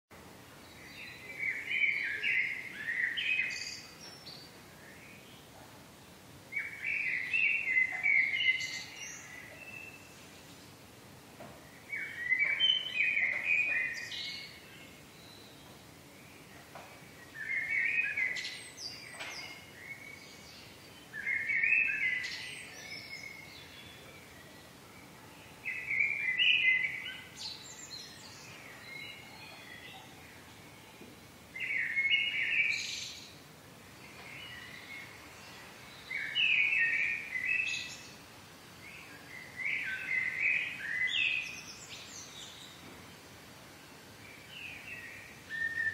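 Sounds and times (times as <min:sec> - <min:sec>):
faint background hiss: 0:00.1 - 0:45.9
songbird warbling: 0:11.8 - 0:15.7.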